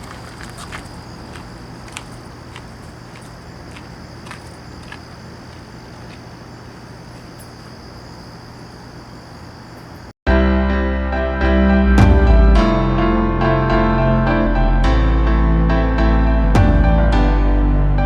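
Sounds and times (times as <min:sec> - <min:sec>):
high insect drone: 0:00.0 - 0:10.2.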